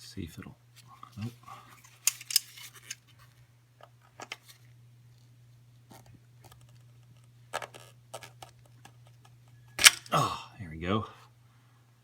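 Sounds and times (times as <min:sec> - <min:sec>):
pliers clicking and scraping: 0:01.8 - 0:03.0, 0:09.8 - 0:10.1.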